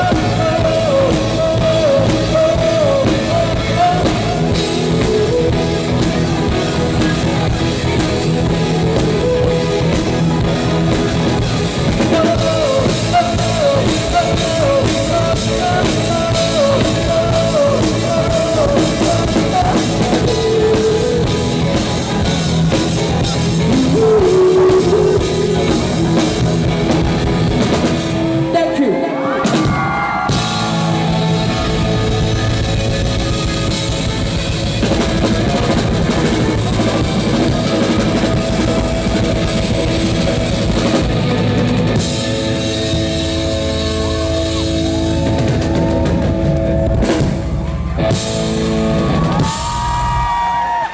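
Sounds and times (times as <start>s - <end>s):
person singing: 0.0s - 7.3s, 11.6s - 27.2s
drum kit: 0.0s - 28.5s, 29.4s - 50.9s
electric guitar: 0.0s - 50.9s
live rock band playing: 0.0s - 50.9s.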